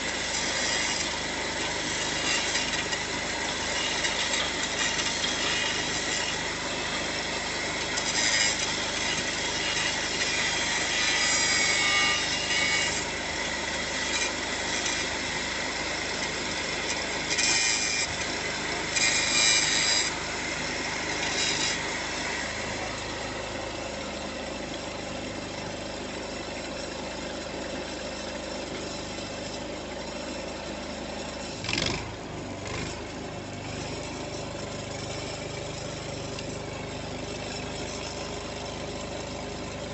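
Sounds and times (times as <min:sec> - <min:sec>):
arc welding crackle: 0:07.8 - 0:13.0
engine idling: 0:21.8 - 0:39.9.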